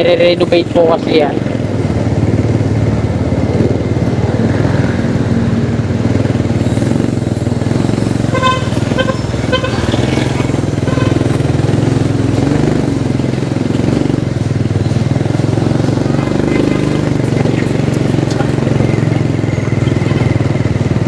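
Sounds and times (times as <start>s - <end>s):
vehicle engine running: 0.0s - 21.0s
car horn short toots: 8.3s - 10.0s, 10.8s - 11.4s.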